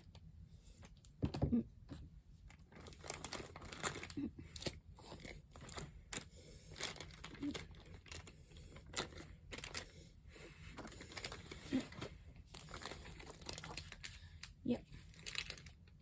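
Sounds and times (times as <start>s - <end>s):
plastic packaging crinkling: 2.4s - 16.0s.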